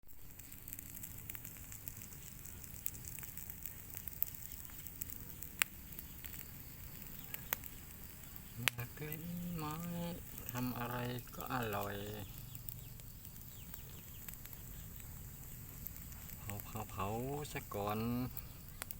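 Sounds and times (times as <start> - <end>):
fire crackling and popping: 0.0 - 18.9
person speaking: 8.6 - 12.4, 16.3 - 18.4.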